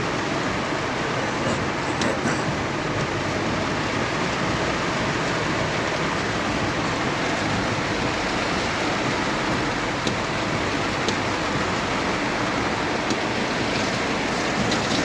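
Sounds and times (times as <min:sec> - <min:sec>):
heavy rain falling: 0:00.0 - 0:15.0.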